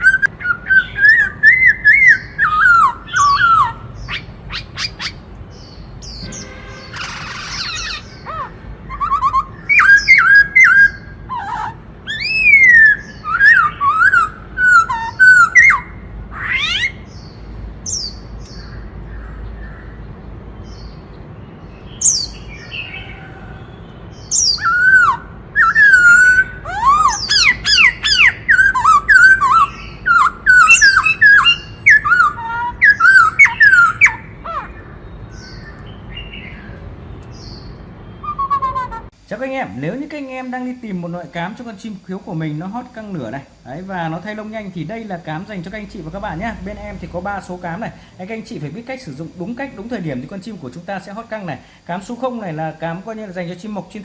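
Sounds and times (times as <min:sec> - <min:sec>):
bird singing whistled phrases: 0:00.0 - 0:05.2, 0:06.1 - 0:17.0, 0:24.2 - 0:34.8, 0:38.1 - 0:39.0.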